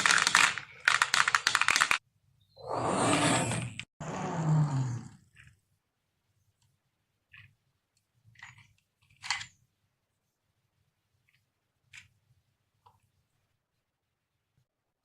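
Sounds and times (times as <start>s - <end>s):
toy pieces clicking and tapping: 0.0s - 2.0s.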